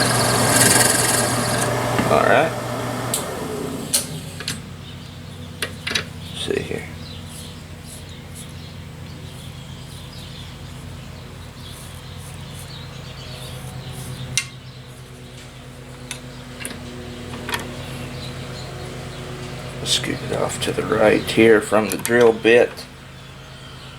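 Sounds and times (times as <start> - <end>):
drill press motor humming: 0.0 - 6.4.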